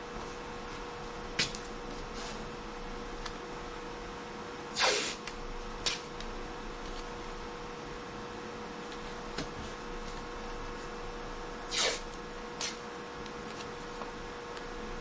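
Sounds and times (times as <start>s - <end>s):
electrical hum: 0.0s - 15.0s
tape ripping off roll: 4.8s - 6.1s, 11.7s - 12.0s.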